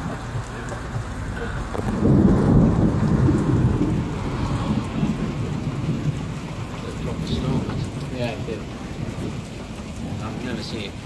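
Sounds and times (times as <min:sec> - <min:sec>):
rolling thunder: 0:00.0 - 0:11.0
steady rain falling: 0:00.0 - 0:11.0.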